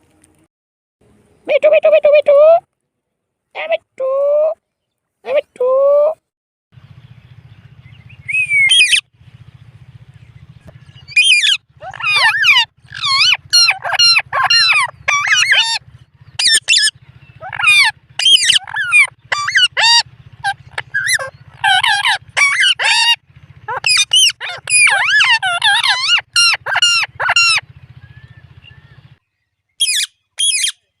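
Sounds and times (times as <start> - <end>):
parakeet chirping and squawking: 8.3 - 9.1, 11.0 - 27.7, 29.8 - 30.9.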